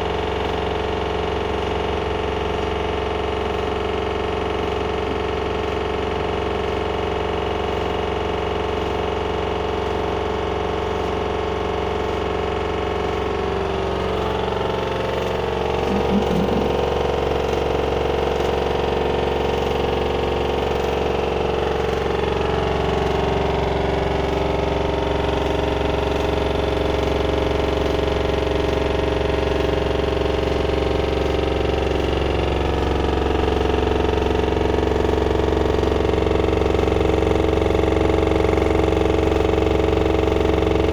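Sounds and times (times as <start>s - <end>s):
washing machine drum spinning: 15.8s - 17.0s.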